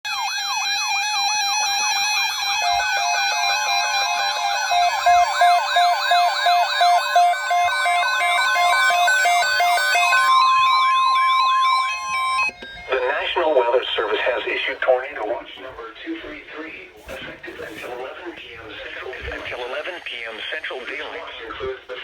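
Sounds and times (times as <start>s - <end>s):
fast warbling sirens: 0.1s - 15.1s
steady alarm tone: 0.1s - 15.7s, 18.5s - 21.6s
repeating on-off beep: 2.4s - 14.1s.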